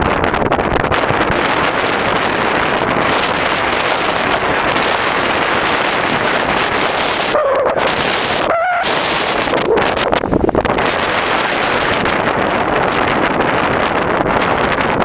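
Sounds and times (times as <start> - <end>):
storm wind buffeting microphone: 0.0 - 15.0
wavering whine-like tones: 3.2 - 10.2.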